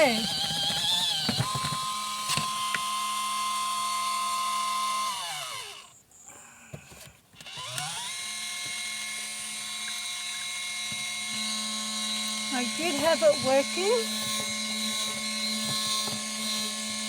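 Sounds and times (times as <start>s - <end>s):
spin-dryer motor whine: 0.0s - 6.0s, 7.4s - 17.0s.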